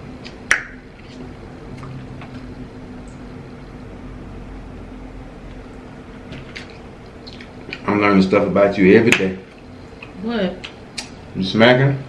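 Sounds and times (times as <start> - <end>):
low steady hum: 0.0 - 12.0
chewing and mouth smacking: 6.3 - 7.9.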